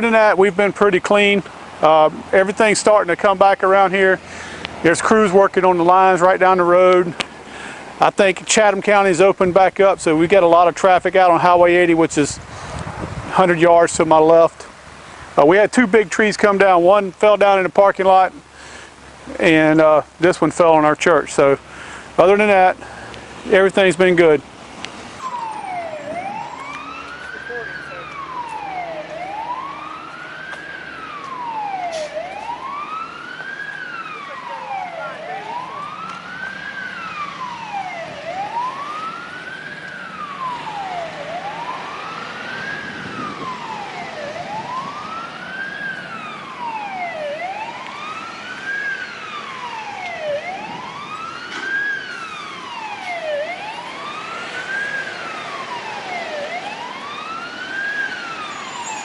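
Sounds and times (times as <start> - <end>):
emergency vehicle siren wailing: 0.0 - 7.2, 25.1 - 59.0.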